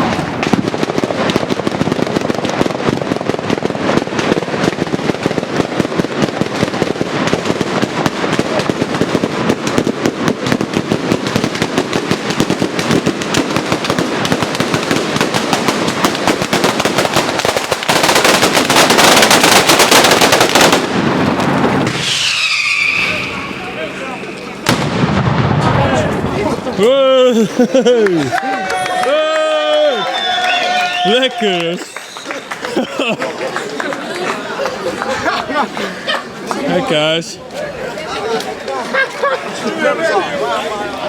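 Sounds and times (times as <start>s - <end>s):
firecrackers rattling bangs: 0.0s - 27.9s.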